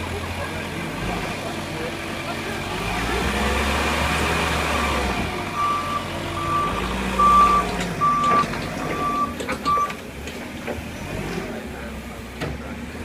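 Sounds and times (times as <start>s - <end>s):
low engine rumble: 0.0s - 13.0s
reversing alarm beeping: 5.6s - 10.0s.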